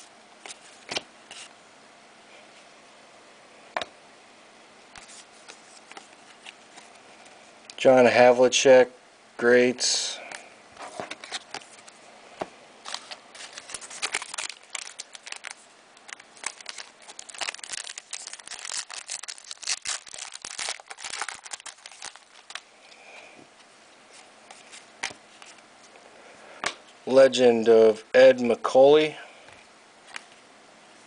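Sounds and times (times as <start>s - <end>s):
trading cards rustling and clicking: 10.8s - 12.0s, 12.8s - 23.0s.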